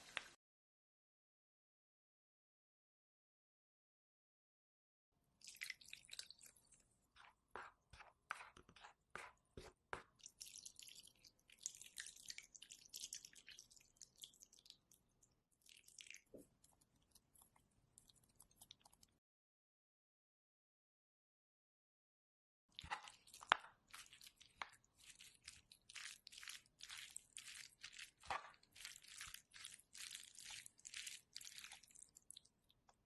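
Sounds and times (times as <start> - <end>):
soft crackling hiss of food: 0.0 - 0.4.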